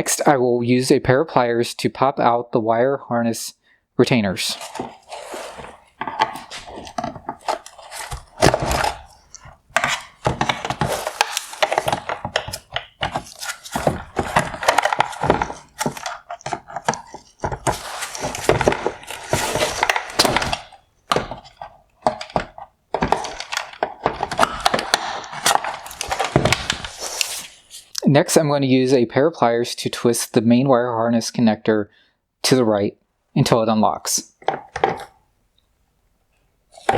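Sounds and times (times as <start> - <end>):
scraping: 4.4 - 27.9
plastic clips cracking and clicking: 22.0 - 26.9.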